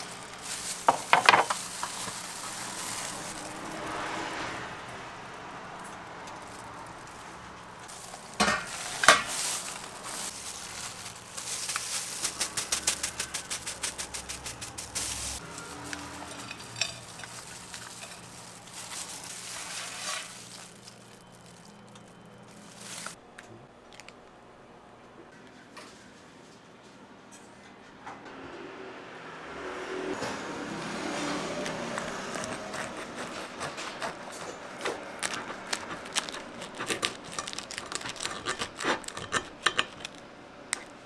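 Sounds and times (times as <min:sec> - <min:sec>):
utensils knocking and scraping: 0:00.0 - 0:04.1, 0:07.9 - 0:21.0, 0:31.6 - 0:40.9
crepe sizzling on a griddle: 0:00.0 - 0:23.2
rhythmic utensil strokes: 0:07.9 - 0:20.9.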